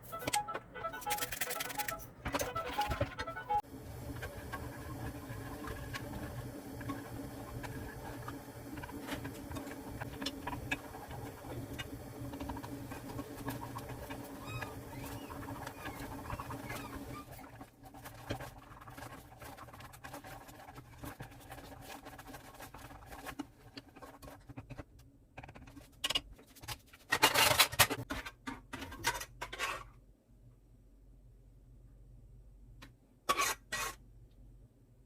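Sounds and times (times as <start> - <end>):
utensil scraping in a pan: 4.2 - 24.8, 25.5 - 30.0, 33.3 - 34.0.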